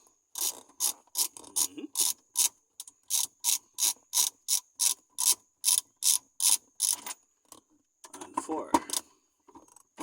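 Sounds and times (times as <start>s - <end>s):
socket ratchet clicking: 0.3s - 7.0s.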